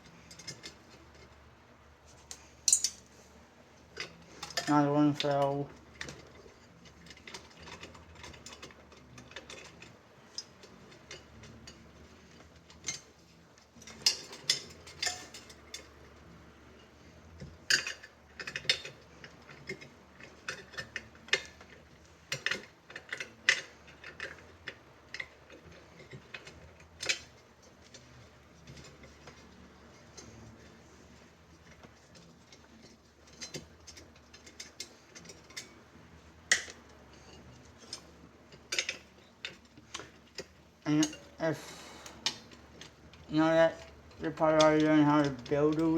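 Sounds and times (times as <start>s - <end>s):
metallic clicks of bicycle spokes: 2.2s - 3.1s, 13.8s - 16.2s, 36.4s - 41.3s, 42.0s - 45.9s.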